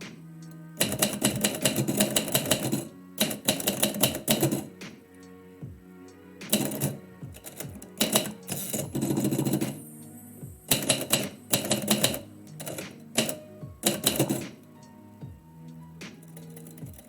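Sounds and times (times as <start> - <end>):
soft background music: 0.0 - 17.0
typewriter keys clicking: 0.8 - 4.7, 10.7 - 14.7
typewriter carriage sliding: 0.8 - 5.0, 6.5 - 9.9, 10.7 - 14.8.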